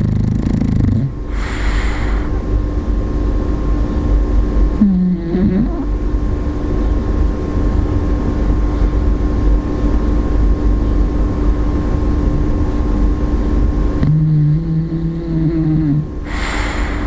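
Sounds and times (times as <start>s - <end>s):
dog snoring: 0.0s - 2.4s, 4.8s - 6.0s, 14.0s - 17.0s.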